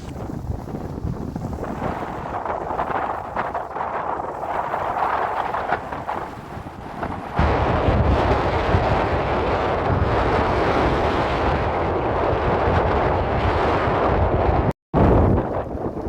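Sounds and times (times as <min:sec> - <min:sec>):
sea rushing: 0:00.0 - 0:13.8
wind buffeting microphone: 0:00.0 - 0:16.0.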